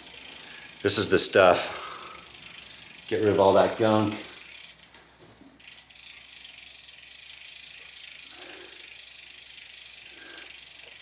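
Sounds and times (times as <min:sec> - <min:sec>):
bicycle freewheel ratchet clicking: 0:00.0 - 0:05.0, 0:05.6 - 0:11.0.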